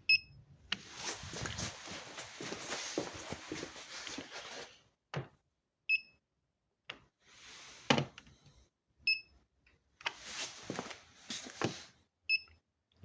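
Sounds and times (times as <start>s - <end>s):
rustling handling noise: 0.8s - 4.9s, 10.1s - 12.0s.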